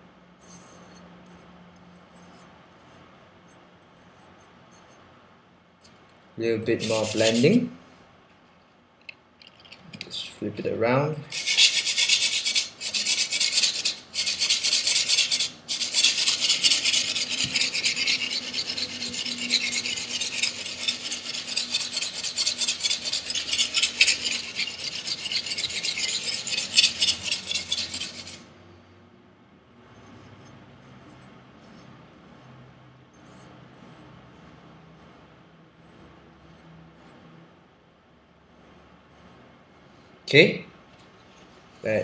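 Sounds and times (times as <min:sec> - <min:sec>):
knife scraping on sharpening stone: 0:06.8 - 0:07.6, 0:11.3 - 0:28.4.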